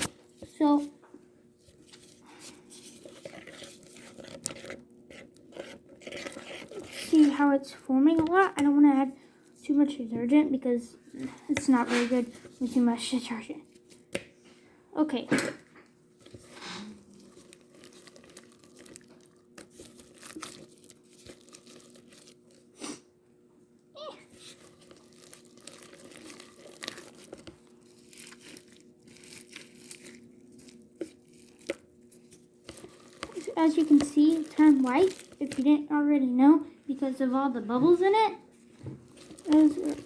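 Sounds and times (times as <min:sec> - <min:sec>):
slime being stirred: 0:00.0 - 0:14.4, 0:16.1 - 0:23.0, 0:24.0 - 0:40.0.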